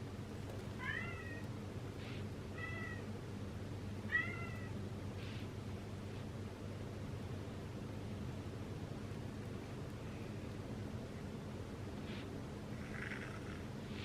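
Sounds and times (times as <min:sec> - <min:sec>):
low background noise: 0:00.0 - 0:14.0
cat meowing: 0:00.8 - 0:01.5, 0:02.6 - 0:03.1, 0:04.1 - 0:04.8.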